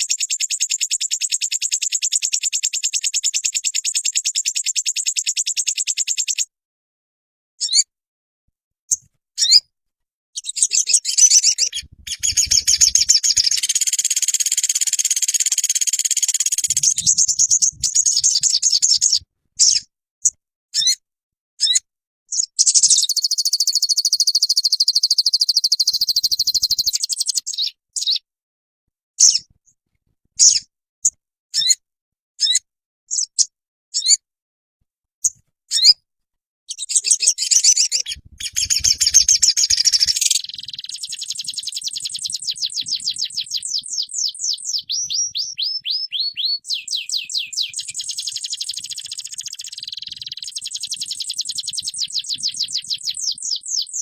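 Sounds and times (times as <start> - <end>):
songbird singing: 0.0 - 6.5, 10.4 - 19.9, 21.6 - 28.2, 36.7 - 54.0.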